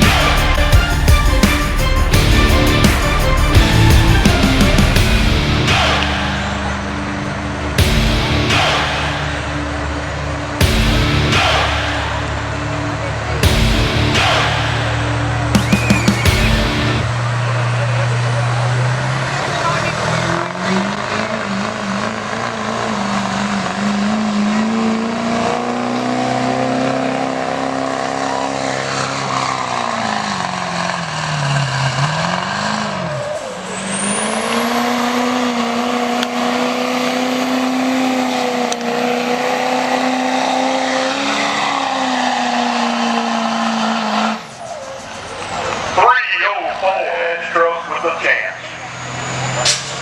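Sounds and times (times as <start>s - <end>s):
pulling vehicle engine revving: 0.0s - 50.0s.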